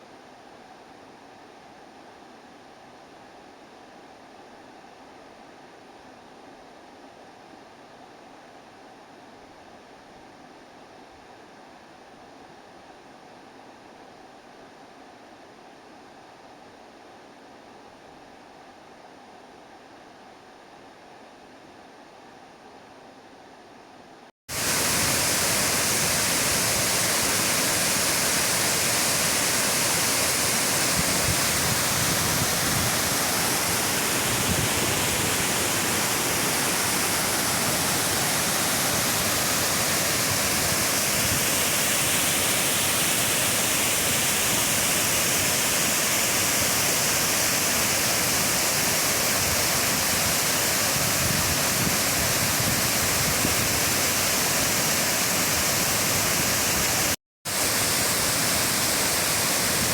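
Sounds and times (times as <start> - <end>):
waterfall rushing: 24.5 - 59.9.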